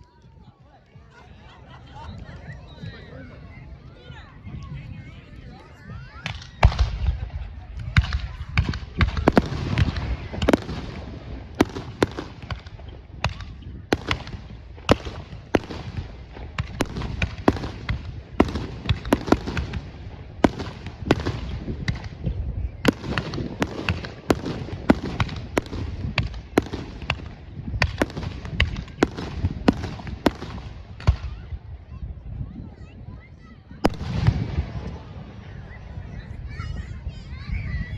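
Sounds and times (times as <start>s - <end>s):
fireworks bangs and pops: 6.2s - 31.5s, 33.8s - 35.2s.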